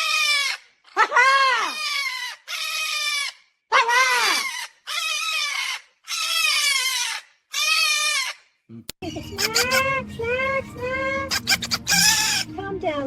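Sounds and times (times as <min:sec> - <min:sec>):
cockatoo squawking: 0:00.0 - 0:08.4, 0:09.2 - 0:10.0, 0:11.0 - 0:12.5.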